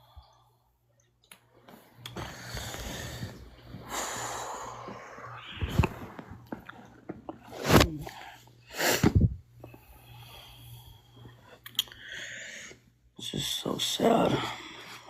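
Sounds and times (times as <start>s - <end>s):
person breathing through nose: 2.2s - 6.2s, 8.7s - 12.8s.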